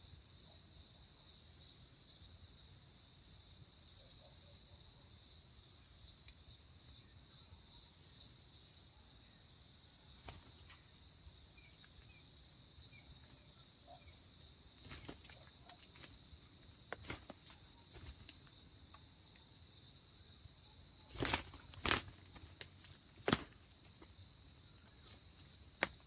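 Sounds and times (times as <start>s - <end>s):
insect drone: 0.0s - 26.0s
faint clicks and rustles: 14.4s - 19.5s, 20.8s - 26.0s.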